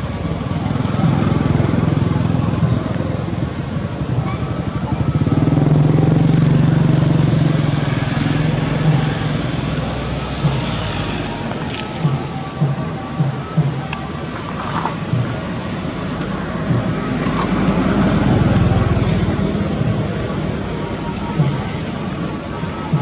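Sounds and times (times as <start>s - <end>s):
vehicle engine running: 0.0s - 23.0s.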